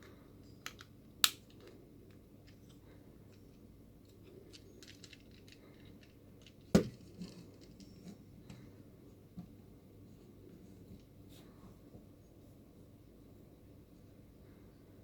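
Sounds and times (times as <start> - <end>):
plastic toy parts clicking: 0.6 - 7.9
sharp plastic knock: 6.8 - 7.0.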